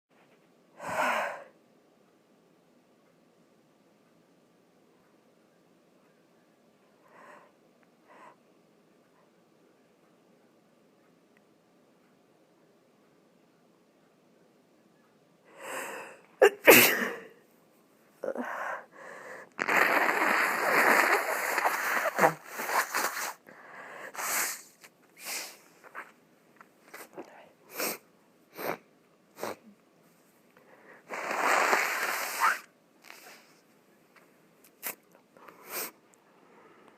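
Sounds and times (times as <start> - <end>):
person sneezing: 16.4 - 17.3, 19.6 - 23.4
person blowing nose: 19.6 - 23.5, 24.1 - 26.0, 27.7 - 28.8, 29.4 - 29.6, 31.1 - 33.5, 34.8 - 35.0, 35.6 - 36.0.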